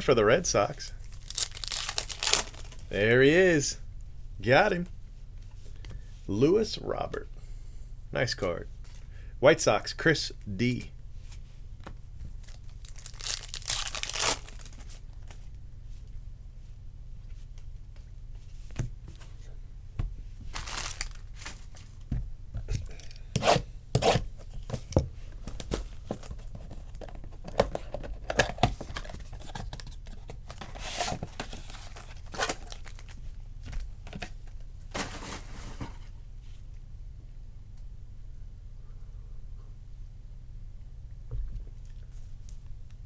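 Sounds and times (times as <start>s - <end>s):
card pack wrappers tearing: 1.0s - 2.9s, 12.5s - 15.0s, 20.6s - 21.8s, 30.5s - 33.2s
cards being handled: 20.5s - 21.9s.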